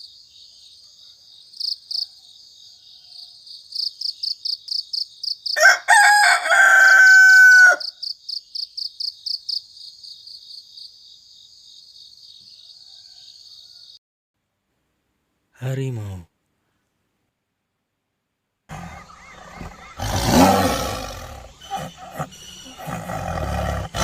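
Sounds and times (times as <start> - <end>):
crickets chirping: 0.0 - 5.9, 7.8 - 14.0, 18.7 - 24.0
rooster crowing: 5.5 - 8.0, 12.6 - 14.0.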